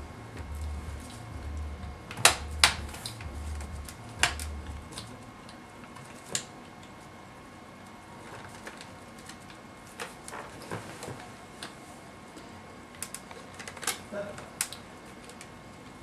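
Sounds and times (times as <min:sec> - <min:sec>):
low pulsing hum: 0:00.0 - 0:06.0.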